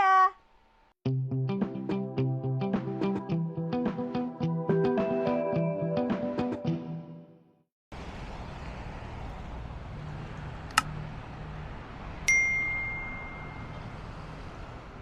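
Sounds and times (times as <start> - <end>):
bell-like ding: 12.3 - 13.9.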